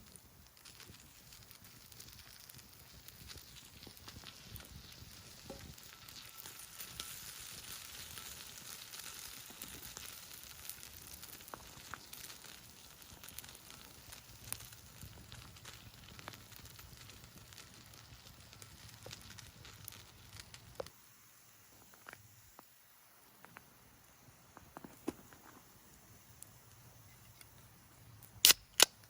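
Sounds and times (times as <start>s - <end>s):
sharp pops: 0.0s - 21.0s, 28.2s - 29.0s
meat sizzling on a griddle: 0.0s - 27.5s.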